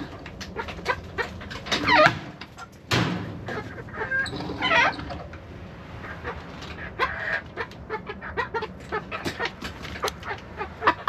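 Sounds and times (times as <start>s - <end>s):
hens clucking: 0.0s - 11.0s
sharp thump: 2.9s - 3.4s.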